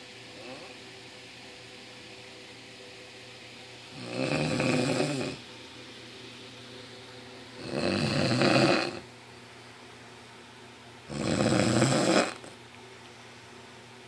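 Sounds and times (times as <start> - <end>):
loud snoring: 3.9 - 5.4, 7.6 - 9.1, 11.1 - 12.5.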